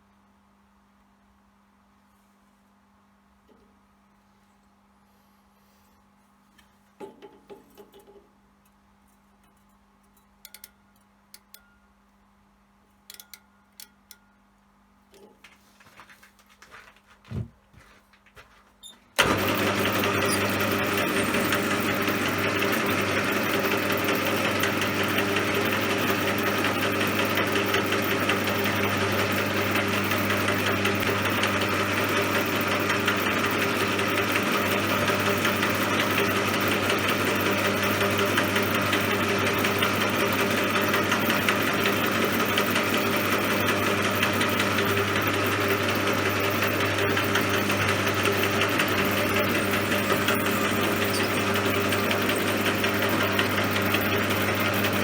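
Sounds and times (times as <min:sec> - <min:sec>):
metal lathe humming: 0:19.2 - 0:55.0.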